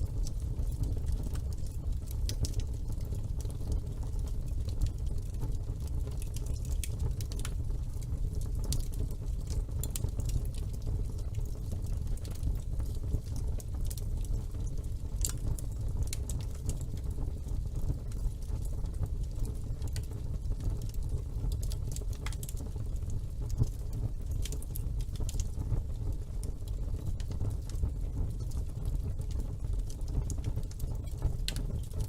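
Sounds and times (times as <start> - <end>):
logs crackling and popping: 0.0 - 32.0
low rumble of flame: 0.0 - 32.0.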